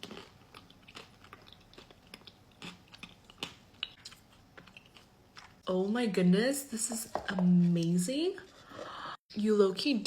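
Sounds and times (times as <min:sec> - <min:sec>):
chewing crunches: 0:00.0 - 0:05.6.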